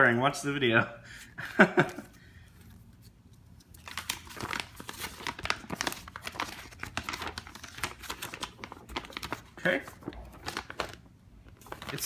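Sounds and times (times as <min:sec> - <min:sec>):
paper rustling and crinkling: 0:01.8 - 0:12.0.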